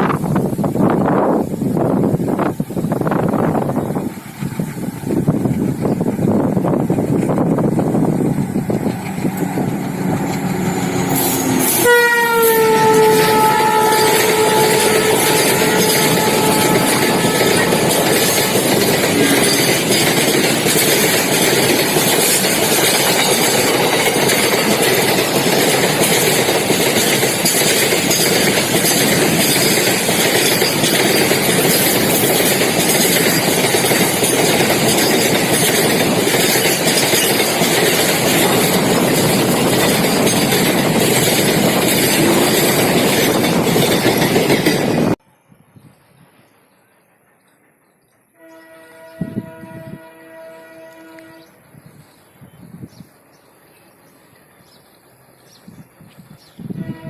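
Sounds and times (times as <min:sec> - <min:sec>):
freight wagons rumbling and clattering: 0:03.2 - 0:11.8, 0:14.3 - 0:45.2
locomotive horn: 0:10.7 - 0:19.6, 0:48.3 - 0:51.6, 0:56.8 - 0:57.0.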